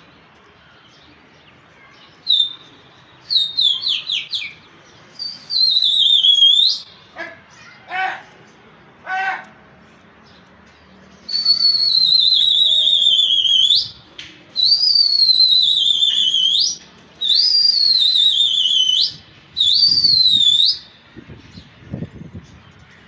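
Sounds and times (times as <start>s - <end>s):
long warbling whistles: 3.3s - 4.3s, 5.2s - 6.9s, 11.3s - 14.0s, 14.6s - 20.9s.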